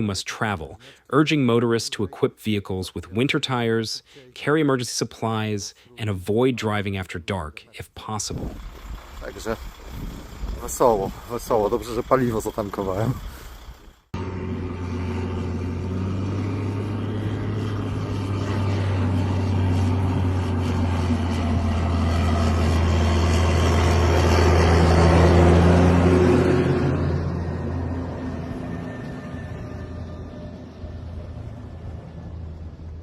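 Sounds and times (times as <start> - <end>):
vehicle engine humming: 8.3 - 33.0.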